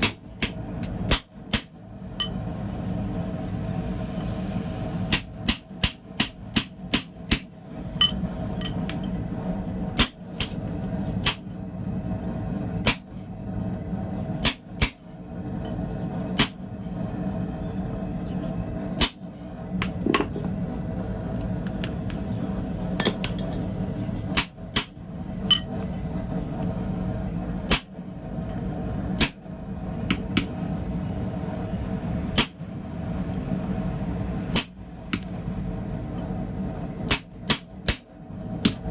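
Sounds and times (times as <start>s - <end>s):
low hum: 7.7s - 14.5s.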